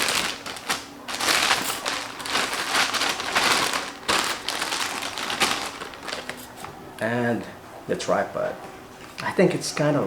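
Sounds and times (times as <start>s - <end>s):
plastic packaging crinkling: 0.0s - 6.7s.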